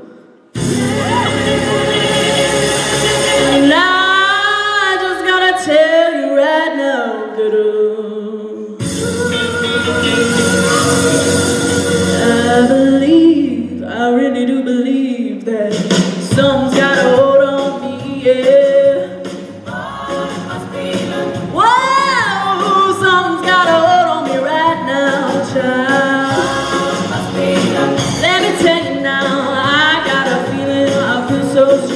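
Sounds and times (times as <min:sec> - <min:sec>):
group singing in harmony: 0:00.0 - 0:05.0, 0:08.8 - 0:13.0, 0:16.7 - 0:31.9.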